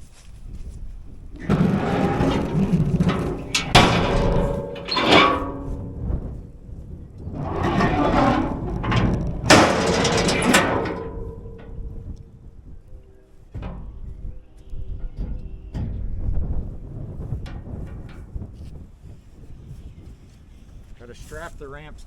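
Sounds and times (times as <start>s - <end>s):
load knocking and rattling: 1.4s - 6.3s, 7.4s - 12.2s.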